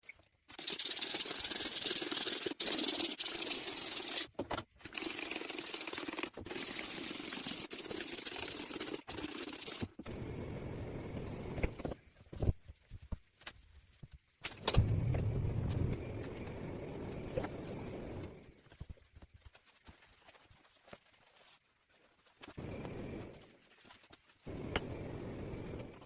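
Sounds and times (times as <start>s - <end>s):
stovetop being scrubbed: 0.5s - 4.3s, 4.9s - 10.0s.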